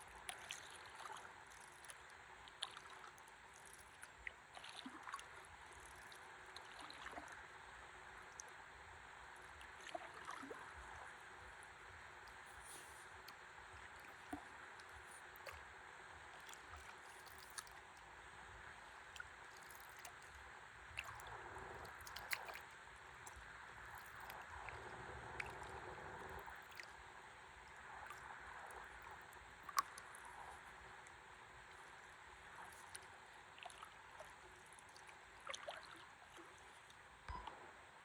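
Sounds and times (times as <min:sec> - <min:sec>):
small clicks and drips: 0:00.0 - 0:38.0
river water flowing: 0:09.2 - 0:37.7.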